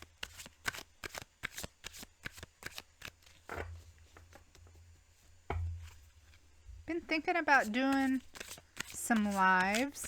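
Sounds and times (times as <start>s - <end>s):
cards being shuffled: 0.0s - 3.5s, 7.6s - 10.0s.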